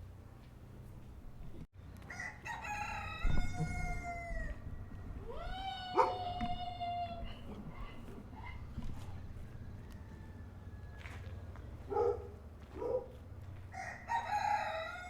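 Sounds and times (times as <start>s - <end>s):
rooster crowing: 2.1s - 11.5s, 13.7s - 15.0s.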